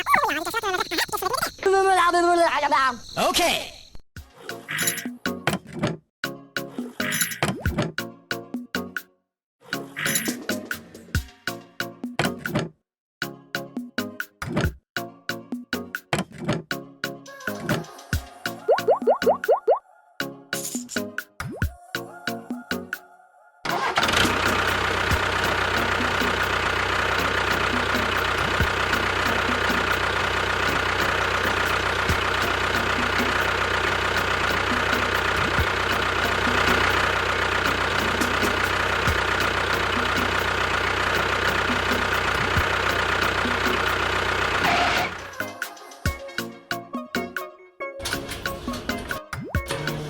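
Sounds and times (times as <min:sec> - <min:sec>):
engine running steadily: 0:23.8 - 0:45.4.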